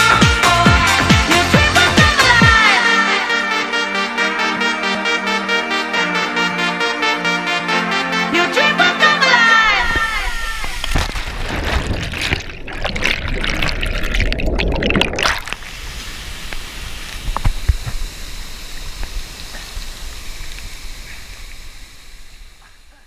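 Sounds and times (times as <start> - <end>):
waterfall splashing water: 9.8 - 22.4.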